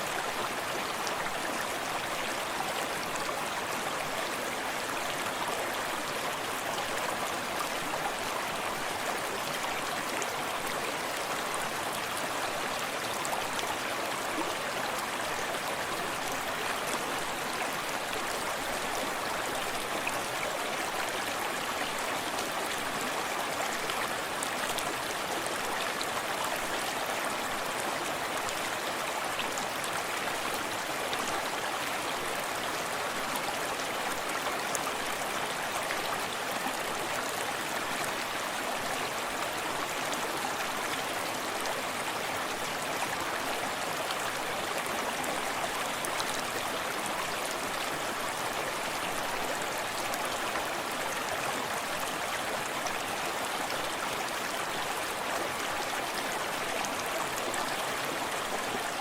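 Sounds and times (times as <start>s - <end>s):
stream flowing over stones: 0.0s - 59.0s.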